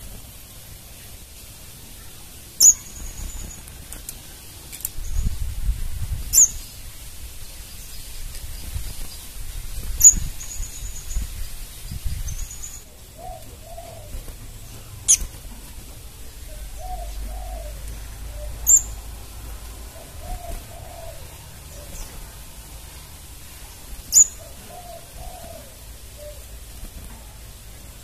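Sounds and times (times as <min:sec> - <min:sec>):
bird giving sharp high chirps: 0:02.5 - 0:03.8, 0:06.2 - 0:06.8, 0:09.8 - 0:12.9, 0:16.6 - 0:19.0, 0:24.1 - 0:25.5.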